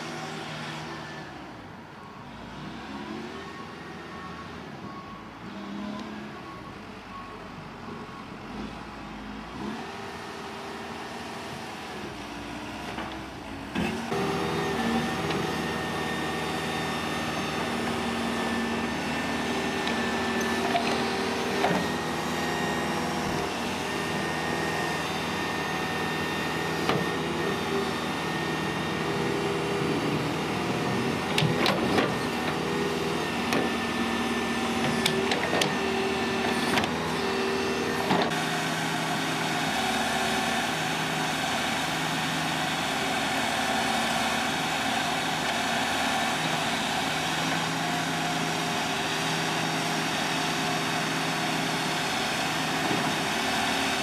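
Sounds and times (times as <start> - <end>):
engine running: 11.6 - 54.0.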